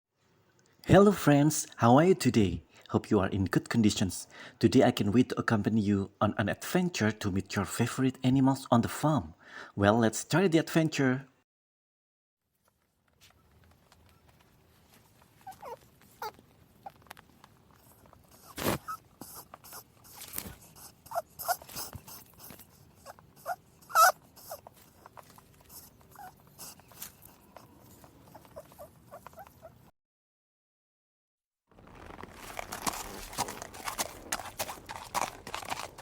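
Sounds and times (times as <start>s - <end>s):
small clicks and rustling: 12.6s - 20.8s
rabbit squeaking: 15.3s - 17.0s, 17.8s - 29.9s.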